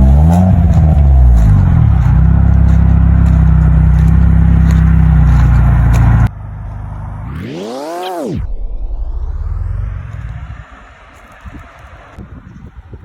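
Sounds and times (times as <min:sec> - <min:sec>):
car engine idling: 0:00.0 - 0:07.2.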